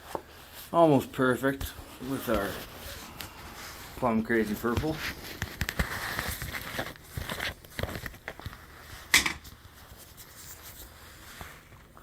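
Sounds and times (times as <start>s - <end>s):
containers rustling and crinkling: 1.5s - 12.0s.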